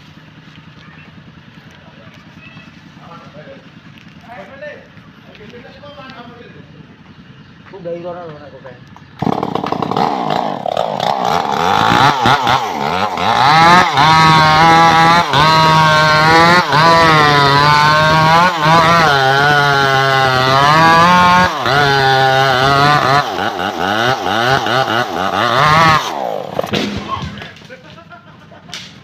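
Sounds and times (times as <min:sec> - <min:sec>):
power saw cutting log: 0:09.2 - 0:27.6.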